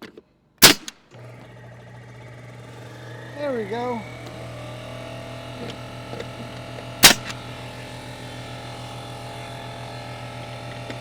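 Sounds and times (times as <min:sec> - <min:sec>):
nail gun firing: 0:00.6 - 0:01.2, 0:07.0 - 0:07.8
low motor hum: 0:01.1 - 0:11.0.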